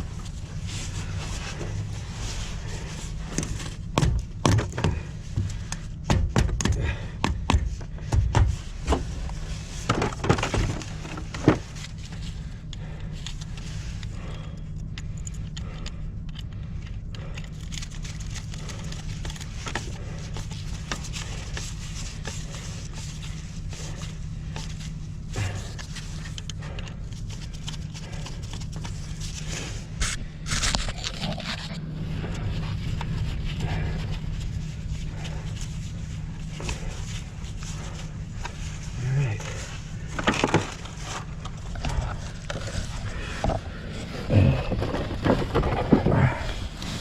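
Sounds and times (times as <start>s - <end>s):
steady low hum: 0.0s - 47.0s
knocks clunks and clatters: 3.3s - 12.2s, 39.4s - 47.0s.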